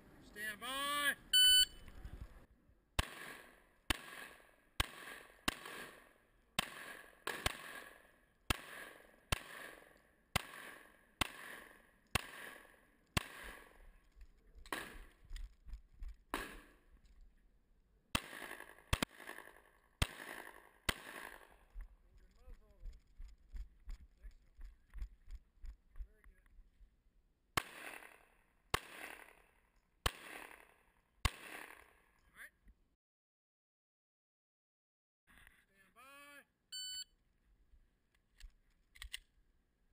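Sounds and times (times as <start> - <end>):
pistol shots with echo: 3.0 - 13.8, 18.1 - 21.5, 30.0 - 31.9.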